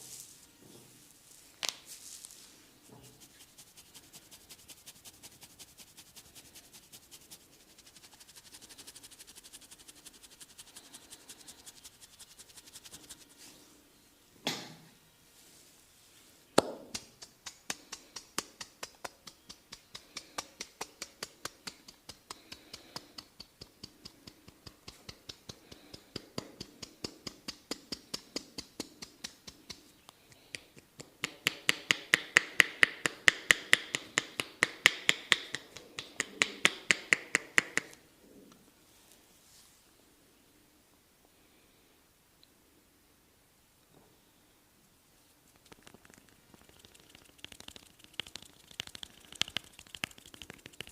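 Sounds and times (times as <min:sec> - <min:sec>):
massage tapping slaps: 0:16.6 - 0:29.8, 0:30.5 - 0:38.0, 0:45.7 - 0:50.9.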